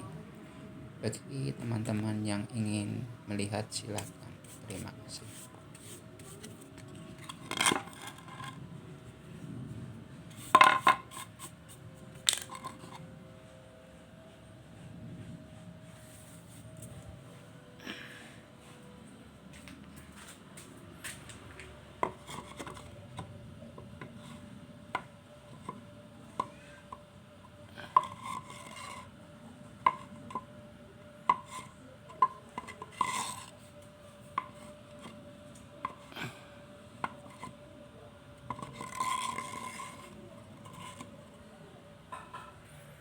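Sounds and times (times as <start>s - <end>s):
faint steady hum: 0.0s - 43.0s
scraping sounds: 3.9s - 9.6s, 10.3s - 13.2s, 22.0s - 23.3s, 27.8s - 29.1s, 38.4s - 41.4s
hard objects clicking and knocking: 6.2s - 8.6s, 10.4s - 11.6s.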